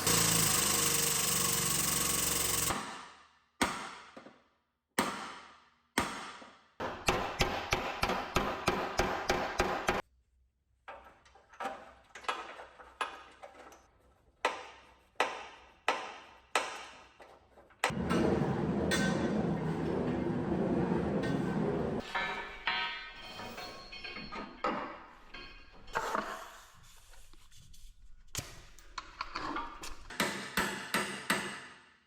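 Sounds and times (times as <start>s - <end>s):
hammer striking metal: 5.0s - 10.0s, 17.8s - 25.7s.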